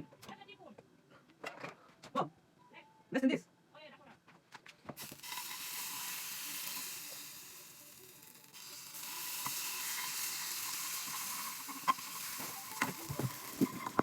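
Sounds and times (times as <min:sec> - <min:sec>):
oil sizzling in frying pan: 0:05.0 - 0:14.0.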